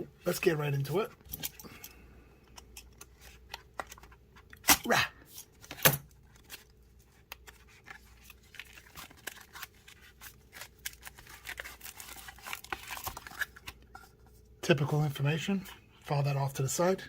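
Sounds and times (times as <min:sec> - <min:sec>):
packaging clicks and scrapes: 0:05.3 - 0:14.2.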